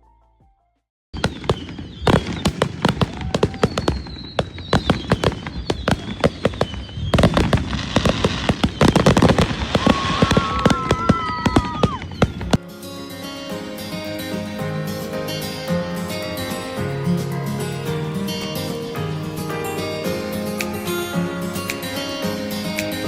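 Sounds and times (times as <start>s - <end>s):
fireworks bangs and crackles: 1.2s - 12.6s
fireworks whistling: 1.2s - 12.6s.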